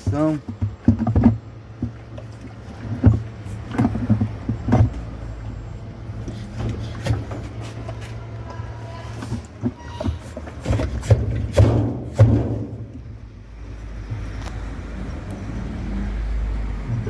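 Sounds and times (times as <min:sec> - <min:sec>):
washing machine basket knocking: 0:09.2 - 0:13.2.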